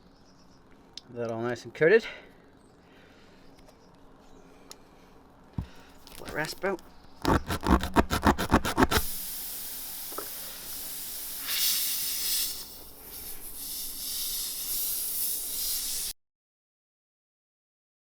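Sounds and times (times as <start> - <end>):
rasp scraping clicks: 5.6 - 9.1
air hissing out of a tyre: 8.9 - 16.2.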